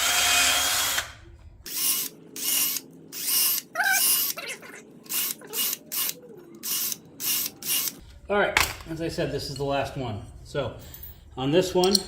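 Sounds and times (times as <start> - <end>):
ratchet wrench clicking: 5.1 - 8.0.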